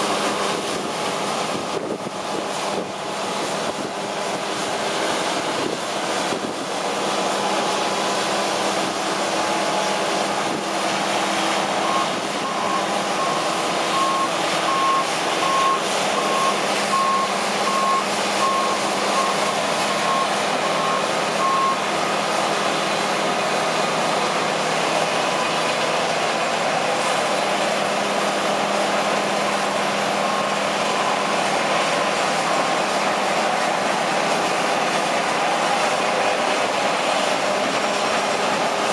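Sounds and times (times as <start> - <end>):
combine harvester running: 0.0 - 38.9
reversing alarm beeping: 11.6 - 21.9, 30.2 - 33.0.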